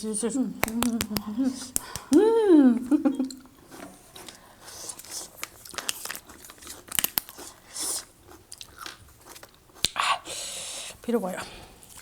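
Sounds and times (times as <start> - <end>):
chewing and crunching: 3.7 - 10.0, 11.8 - 12.0.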